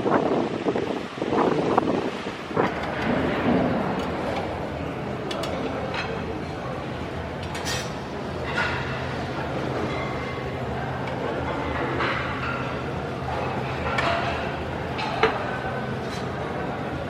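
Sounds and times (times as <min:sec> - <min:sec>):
background chatter: 0:00.5 - 0:17.0
dishes clinking: 0:05.2 - 0:16.4.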